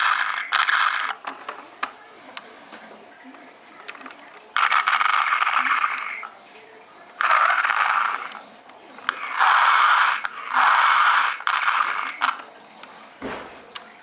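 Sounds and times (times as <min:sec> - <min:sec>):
toy electronic hissy bursts: 0:07.2 - 0:08.4, 0:09.1 - 0:12.4.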